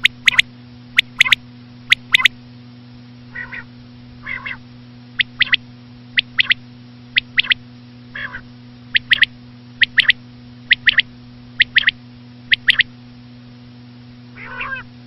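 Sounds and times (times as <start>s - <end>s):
quail calling: 0.0s - 0.4s, 1.0s - 2.3s, 3.3s - 4.6s, 5.2s - 5.6s, 6.2s - 6.6s, 7.2s - 12.9s, 14.4s - 14.9s.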